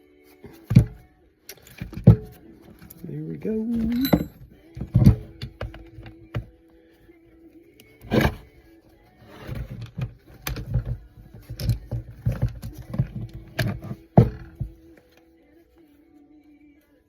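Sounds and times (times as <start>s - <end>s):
metal clunk: 0.5s - 3.0s, 3.7s - 6.5s, 8.0s - 8.5s, 9.3s - 14.8s
metal parts clanking and rattling: 0.7s - 6.1s.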